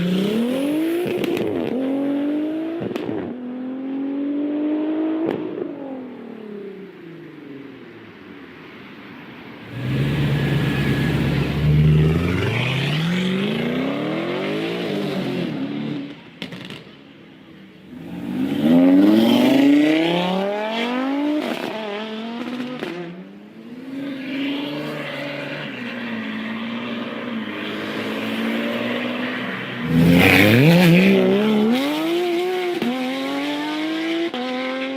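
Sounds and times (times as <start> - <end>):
car engine accelerating: 9.6 - 15.0.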